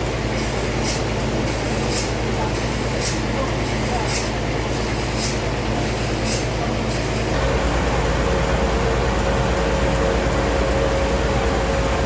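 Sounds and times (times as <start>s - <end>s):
sawmill machinery drone: 7.2s - 12.0s
mid-pitched machine whine: 7.4s - 12.0s.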